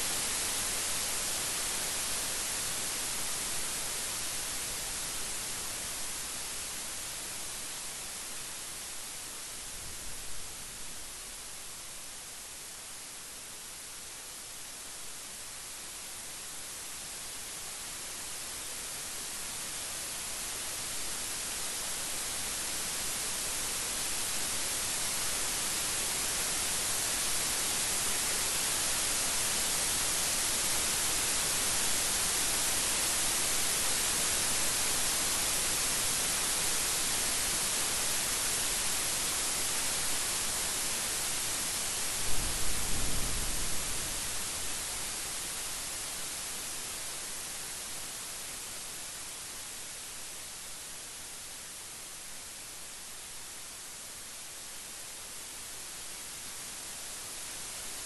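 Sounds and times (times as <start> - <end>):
heavy rain hiss: 0.0 - 58.0.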